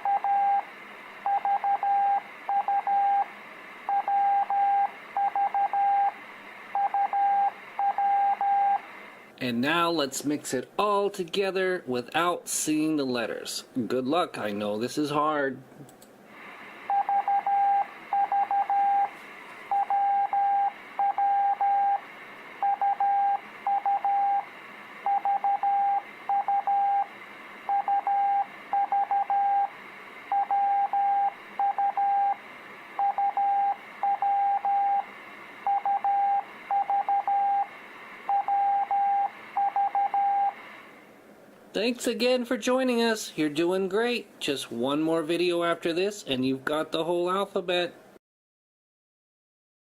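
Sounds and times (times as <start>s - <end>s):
morse code beeps: 0.0s - 3.3s, 3.9s - 6.2s, 6.8s - 8.8s, 16.9s - 19.1s, 19.7s - 22.0s, 22.6s - 24.4s, 25.0s - 27.1s, 27.7s - 29.7s, 30.3s - 32.4s, 33.0s - 35.0s, 35.6s - 37.7s, 38.3s - 40.6s
radio band hiss: 8.8s - 16.9s, 40.5s - 41.0s.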